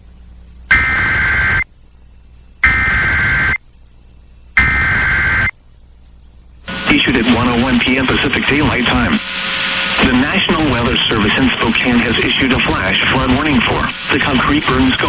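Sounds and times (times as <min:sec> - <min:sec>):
two-pitch digital data screech: 0:00.7 - 0:01.7, 0:02.6 - 0:03.6, 0:04.6 - 0:05.5.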